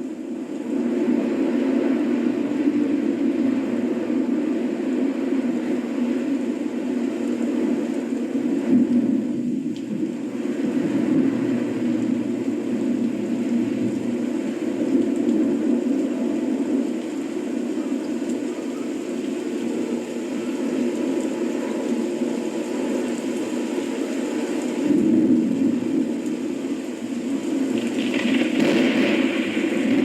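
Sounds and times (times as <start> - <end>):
low rumbling noise: 23.4 - 30.0.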